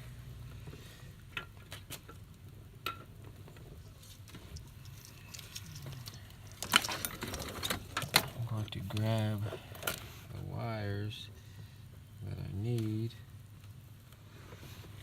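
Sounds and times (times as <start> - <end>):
electrical tape peeling crackle: 3.8 - 9.4.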